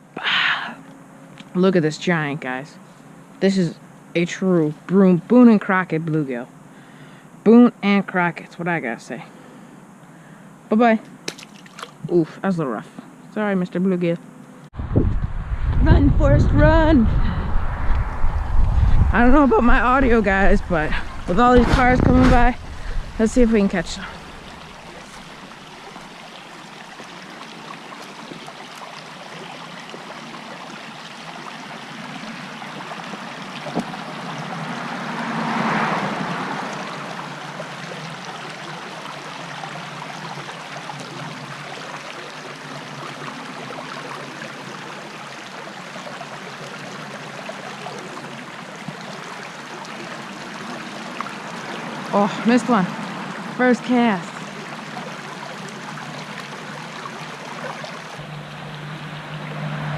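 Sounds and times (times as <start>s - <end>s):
creek running: 0.0s - 59.9s
car driving past: 16.7s - 25.4s, 33.9s - 37.9s, 58.2s - 59.9s.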